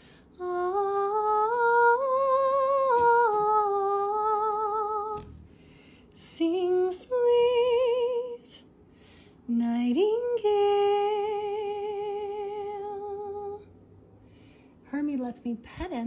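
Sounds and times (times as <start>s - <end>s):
woman singing wordless melody: 0.3s - 5.4s, 6.2s - 8.7s, 9.5s - 13.8s.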